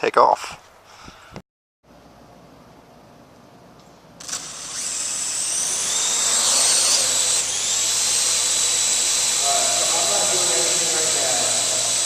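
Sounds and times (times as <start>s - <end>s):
drone propellers whining: 4.2s - 12.0s.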